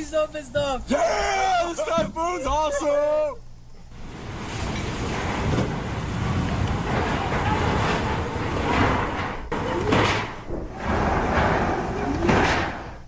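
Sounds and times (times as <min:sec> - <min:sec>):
wind buffeting microphone: 0:03.8 - 0:13.0
faint voices: 0:04.8 - 0:12.8.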